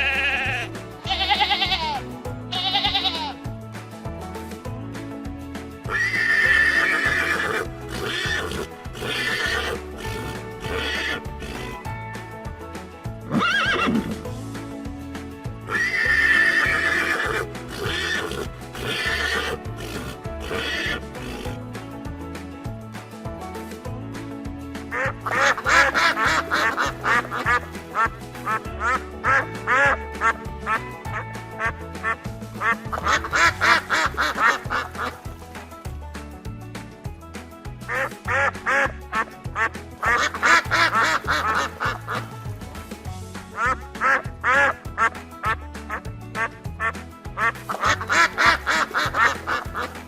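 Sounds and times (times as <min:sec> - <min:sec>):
horse whinnying: 0:00.0 - 0:03.3, 0:05.9 - 0:11.7, 0:13.3 - 0:14.2, 0:15.7 - 0:21.6
background music with steady beat: 0:00.0 - 0:50.0
ducks quacking: 0:05.9 - 0:11.8, 0:15.7 - 0:21.6, 0:24.9 - 0:35.3, 0:37.9 - 0:42.5, 0:43.5 - 0:50.0.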